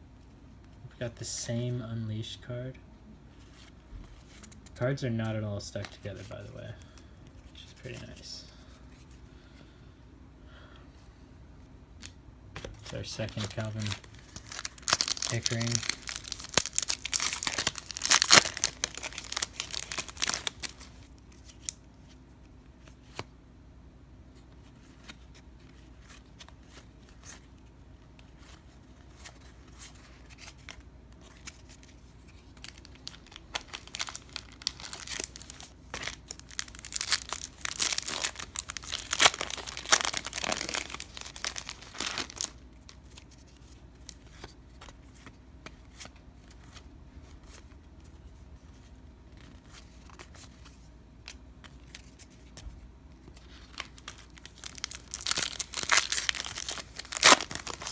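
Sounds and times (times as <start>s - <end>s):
cards being handled: 5.6s - 9.2s, 12.0s - 22.2s, 24.4s - 57.9s
card pack wrappers crinkling: 12.6s - 21.8s, 28.2s - 45.3s, 53.2s - 57.9s.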